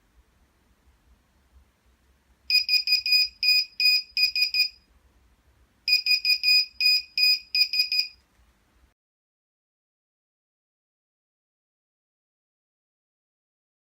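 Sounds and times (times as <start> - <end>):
shrill electronic alarm beeps: 2.5 - 4.8, 5.9 - 8.2.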